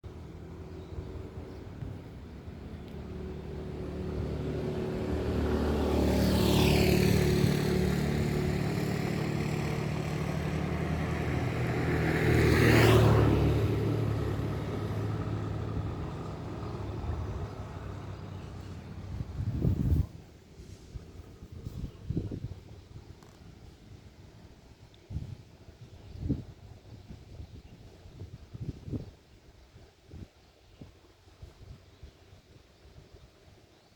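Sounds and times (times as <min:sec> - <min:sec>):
vehicles driving past: 0:00.0 - 0:24.0.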